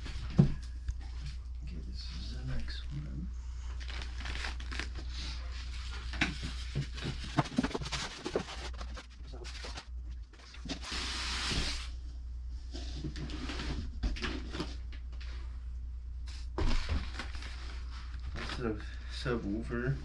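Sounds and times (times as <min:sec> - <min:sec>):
steady low hum: 0:00.0 - 0:20.0
cardboard packaging handled: 0:03.8 - 0:05.1, 0:05.7 - 0:09.9
rustling scrape: 0:03.8 - 0:09.9, 0:10.6 - 0:12.0, 0:12.6 - 0:14.8.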